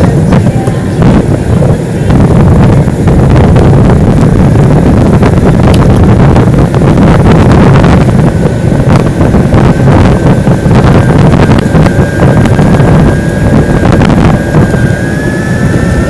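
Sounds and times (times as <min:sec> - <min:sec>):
wind buffeting on microphone: 0:00.0 - 0:16.0.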